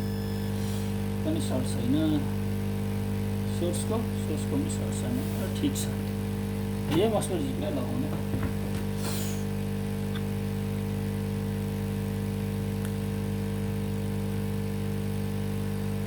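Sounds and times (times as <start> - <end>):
electrical hum: 0.0 - 16.0
short hiss: 9.0 - 9.5.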